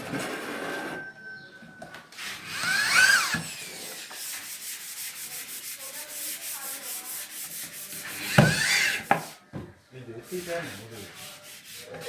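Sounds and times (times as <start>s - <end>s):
loud scraping stroke with squeal: 0.3s - 4.2s
sanding wood by hand: 2.2s - 9.4s, 10.2s - 12.0s.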